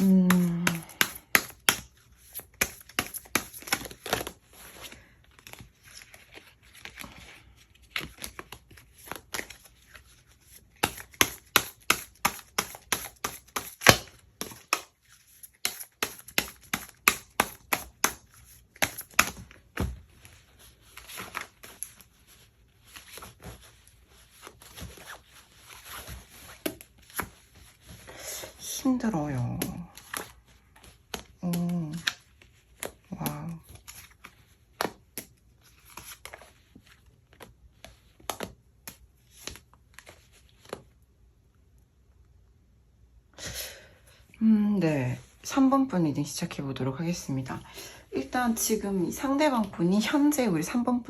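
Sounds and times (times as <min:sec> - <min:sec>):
cards clicking on a table: 0:00.0 - 0:04.3, 0:15.5 - 0:19.4, 0:37.3 - 0:40.8
paper rustling: 0:00.0 - 0:28.6.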